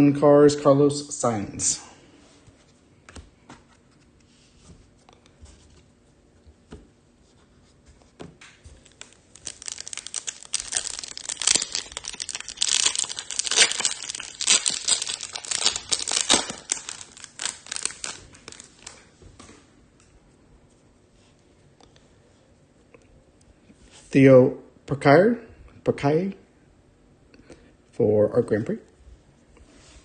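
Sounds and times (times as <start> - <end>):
foil wrapper tearing and crinkling: 8.8 - 19.1.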